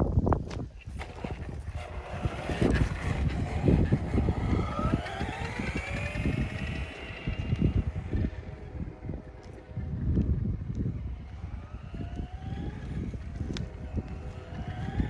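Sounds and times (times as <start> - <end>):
toy truck electric motor whining: 0.5 - 9.8, 11.1 - 15.0
low rumble: 0.8 - 15.0.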